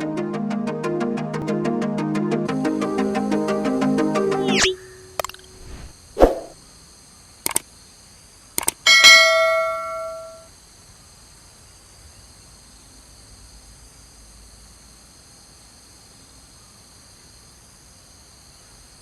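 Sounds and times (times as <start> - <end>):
short sharp clicks: 7.4 - 7.6, 8.6 - 8.8
bell-like chime: 8.9 - 10.4.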